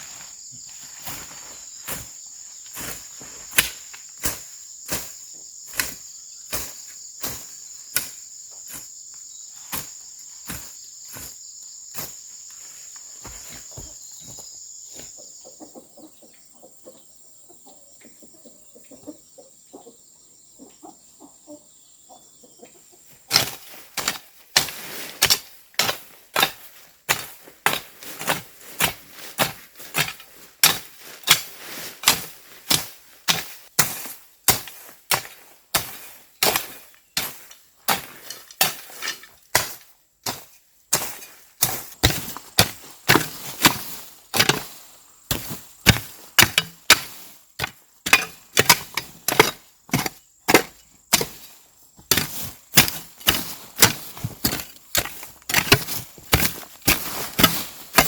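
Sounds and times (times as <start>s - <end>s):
insect drone: 0.0s - 15.8s
hand tool strikes: 2.8s - 5.1s, 23.3s - 58.0s.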